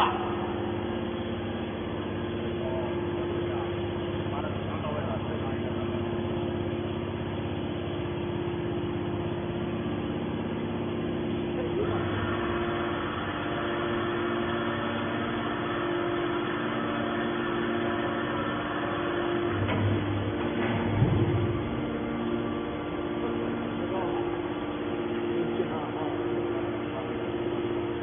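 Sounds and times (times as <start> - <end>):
hydraulic baler humming: 0.0 - 28.0.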